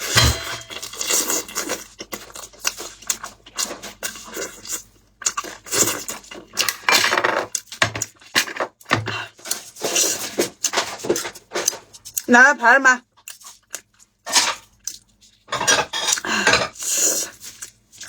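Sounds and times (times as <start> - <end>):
dishes and cutlery clattering: 0.0 - 1.1, 15.5 - 16.8.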